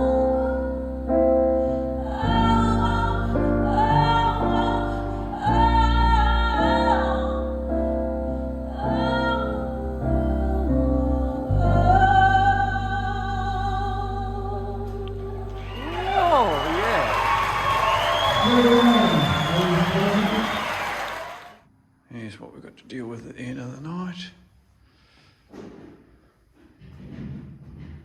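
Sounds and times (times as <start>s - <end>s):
woman singing: 0.0s - 7.6s, 8.6s - 16.2s
deep bass: 0.0s - 16.2s
keyboard chords: 0.0s - 21.0s.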